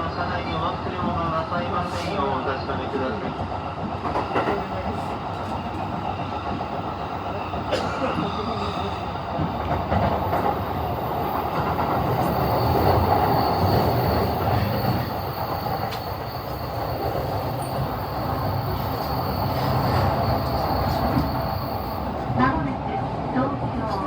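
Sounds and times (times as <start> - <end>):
train wheels rumbling on rail: 0.4 - 24.0
rail-joint clicks: 9.3 - 22.3.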